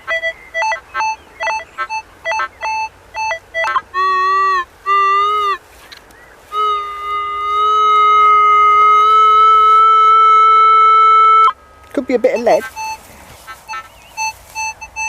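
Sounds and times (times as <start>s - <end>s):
metal detector tone: 0.0s - 4.6s, 12.1s - 13.1s, 13.7s - 15.0s.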